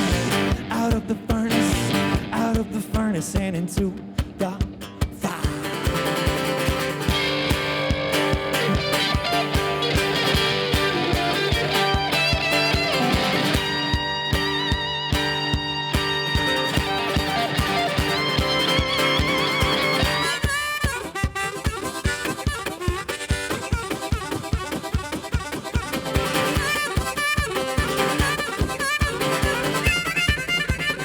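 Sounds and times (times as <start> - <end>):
fast drum beat: 0.0 - 31.0
lead instrument playing runs: 6.7 - 31.0.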